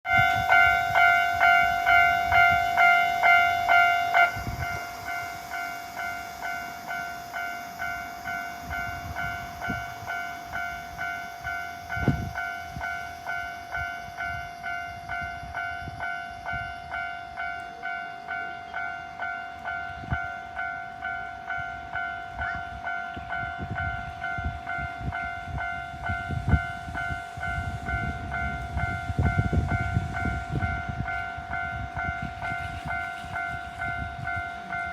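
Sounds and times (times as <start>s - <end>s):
level crossing alarm ringing: 0.1s - 34.9s
low train rumble: 0.1s - 34.9s.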